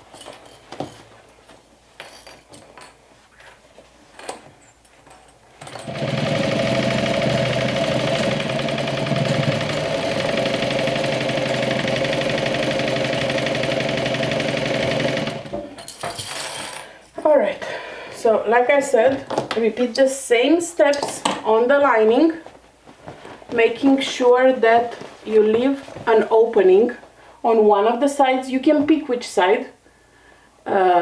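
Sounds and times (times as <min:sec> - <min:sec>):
sewing machine running: 0:05.6 - 0:15.8.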